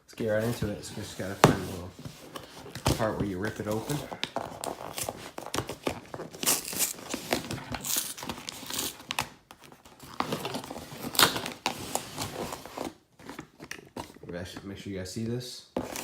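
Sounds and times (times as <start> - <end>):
package being torn open: 4.6 - 9.4.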